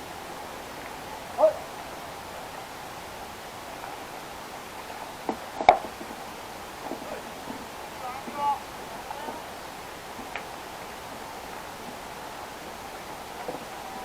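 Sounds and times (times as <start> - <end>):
open-air ambience hiss: 0.0 - 14.0
distant shout: 1.3 - 1.8, 7.9 - 9.7, 13.4 - 14.0.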